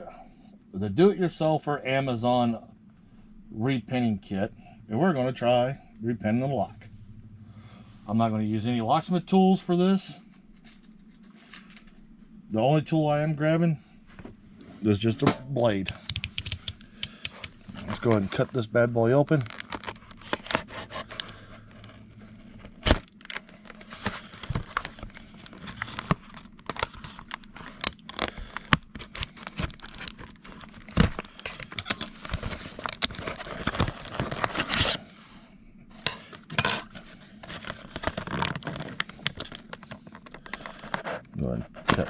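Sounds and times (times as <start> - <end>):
plastic crinkling and scraping: 17.4 - 42.0
blade cutting plastic packaging: 22.5 - 35.0, 37.4 - 39.8.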